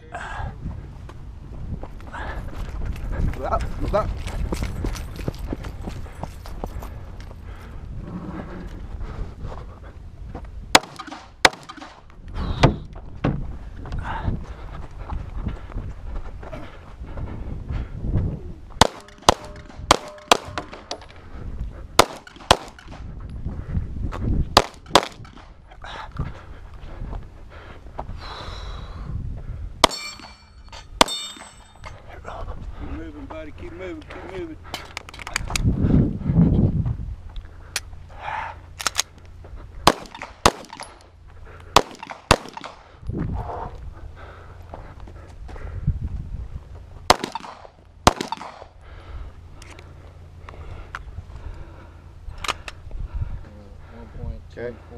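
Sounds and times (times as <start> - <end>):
low rumbling noise: 0.0 - 54.9
pistol shots: 10.7 - 12.0, 18.8 - 21.0, 22.0 - 23.0, 24.6 - 25.5, 29.8 - 30.4, 39.8 - 41.0, 41.7 - 42.9, 47.1 - 48.7
steel targets ringing: 18.9 - 21.0, 29.8 - 32.0.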